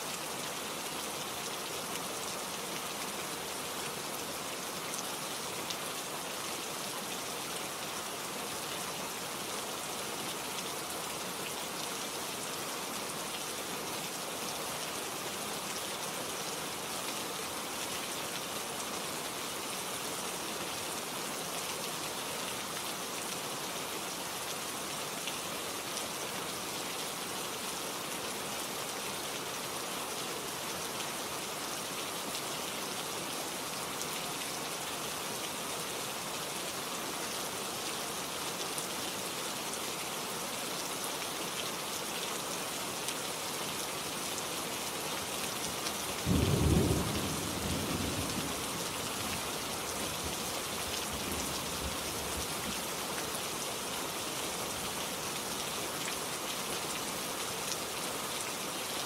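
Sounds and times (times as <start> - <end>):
rain pattering on leaves: 30.3 - 59.0.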